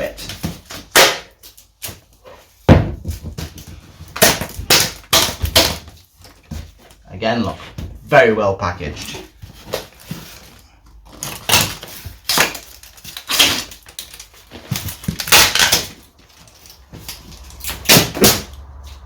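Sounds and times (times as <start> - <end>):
cardboard scraping and rustling: 5.4 - 8.0, 8.9 - 19.0.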